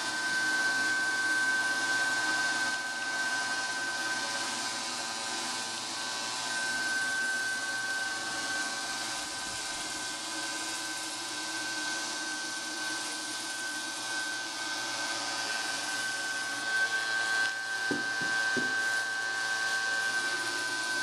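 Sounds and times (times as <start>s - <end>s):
high whine: 11.8s - 21.0s.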